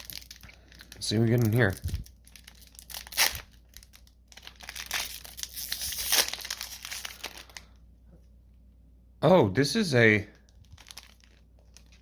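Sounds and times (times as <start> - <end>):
foil wrapper tearing: 0.0 - 7.7, 10.4 - 12.0
foil wrapper crinkling: 0.0 - 7.8, 10.3 - 12.0.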